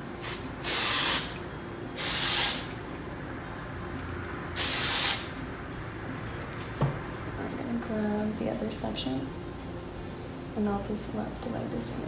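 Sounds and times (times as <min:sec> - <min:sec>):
aerosol can spraying: 0:00.2 - 0:01.4, 0:02.0 - 0:02.8, 0:04.6 - 0:05.4.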